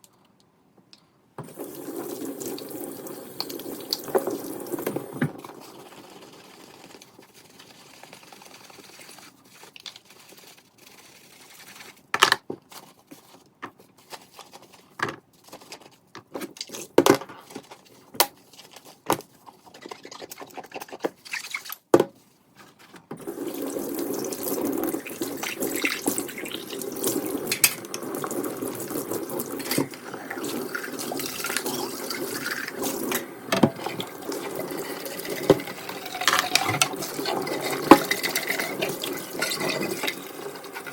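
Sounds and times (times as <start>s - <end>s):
tap water running: 1.4s - 9.4s, 23.1s - 40.9s
dishes clinking in sink: 33.1s - 34.1s.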